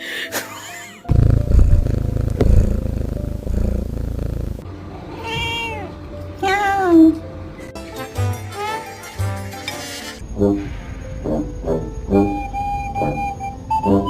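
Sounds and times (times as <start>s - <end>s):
loud low rumble: 1.1s - 4.7s
cat meowing: 4.9s - 7.2s.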